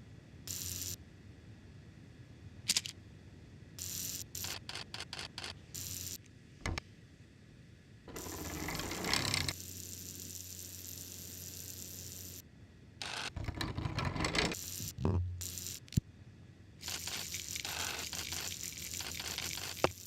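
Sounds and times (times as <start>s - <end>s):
mechanical whirring: 8.1s - 9.6s, 13.3s - 14.6s.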